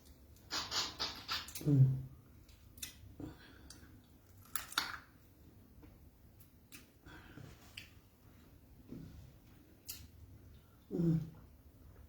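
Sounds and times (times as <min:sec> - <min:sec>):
mouth clicks and smacks eating: 0:00.0 - 0:05.2, 0:06.4 - 0:07.0, 0:09.8 - 0:10.2.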